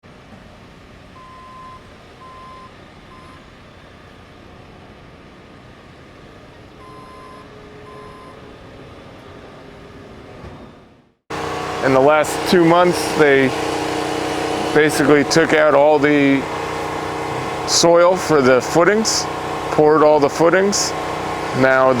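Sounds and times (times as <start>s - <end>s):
construction site noise: 0.1s - 22.0s
backup alarm beeping: 1.2s - 3.8s, 6.8s - 8.5s.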